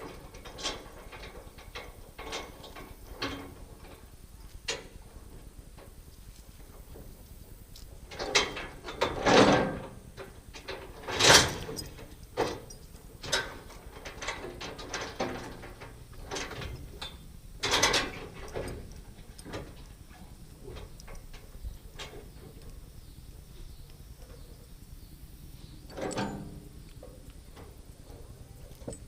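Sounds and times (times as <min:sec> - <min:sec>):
metal parts clanking and scraping: 0:08.1 - 0:22.6, 0:25.9 - 0:26.7.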